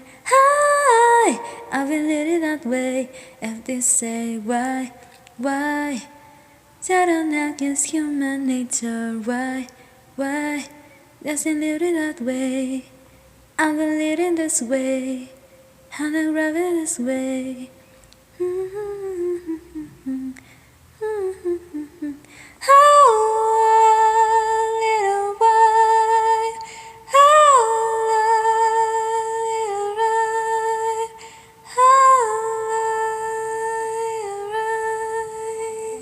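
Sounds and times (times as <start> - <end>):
person humming a melody: 18.4 - 20.4, 21.0 - 23.5.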